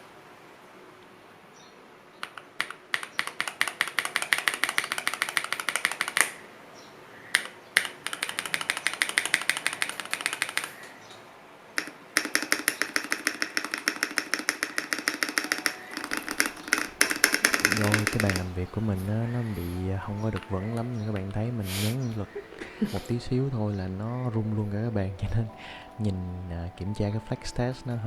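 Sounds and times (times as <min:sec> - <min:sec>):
mechanical keyboard key clacks: 0:02.3 - 0:06.4, 0:07.4 - 0:10.8, 0:12.2 - 0:19.4.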